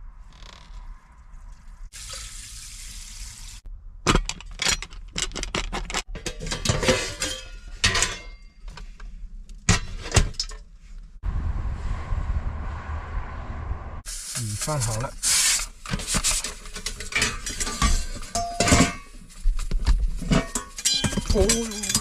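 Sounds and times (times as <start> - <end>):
water pouring: 1.1 - 3.6
kitchenware clinking and clattering: 4.5 - 8.5, 16.0 - 22.0.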